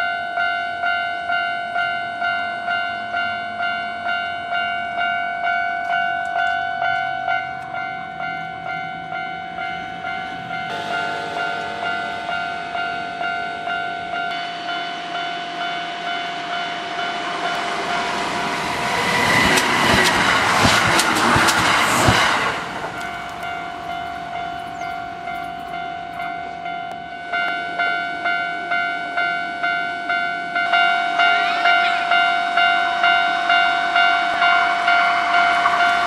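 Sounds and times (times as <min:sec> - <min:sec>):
level-crossing warning bell: 0:00.0 - 0:36.0
train wheels clacking over rail joints: 0:17.5 - 0:26.3.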